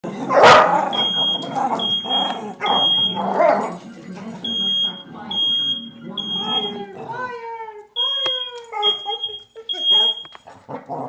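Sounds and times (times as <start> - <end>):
dog barking: 0.2 - 3.8, 8.7 - 11.0
smoke alarm beeping: 0.8 - 3.4, 4.3 - 6.9, 8.0 - 10.5.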